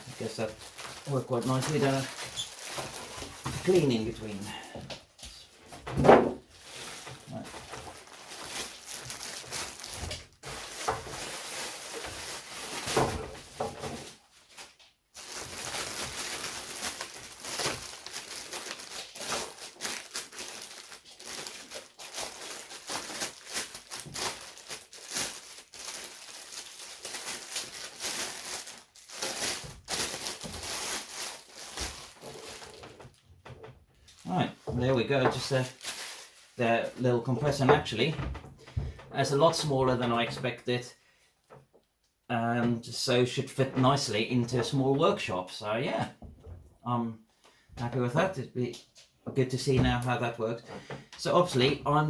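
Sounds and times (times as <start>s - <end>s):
packaging rustling and crinkling: 0.0s - 38.0s.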